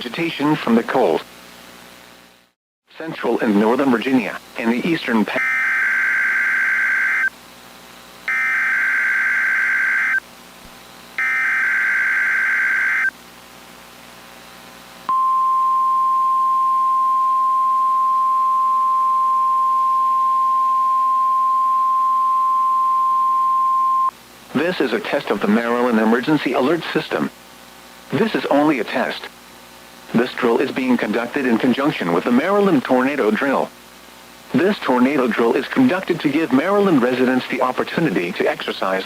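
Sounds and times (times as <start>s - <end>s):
steady warning alarm tone: 5.4s - 7.3s, 8.3s - 10.2s, 11.2s - 13.1s
warbling digital data tones: 8.3s - 10.2s, 11.2s - 13.1s.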